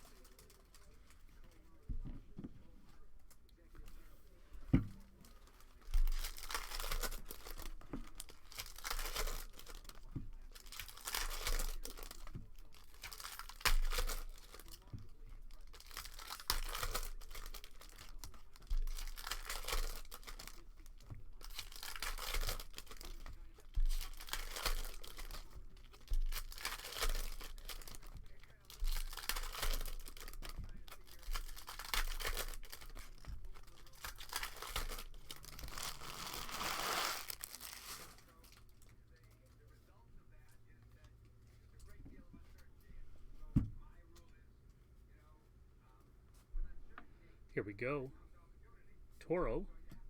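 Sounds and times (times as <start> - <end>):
foil wrappers tearing and crinkling: 0.0 - 1.9, 5.0 - 39.7.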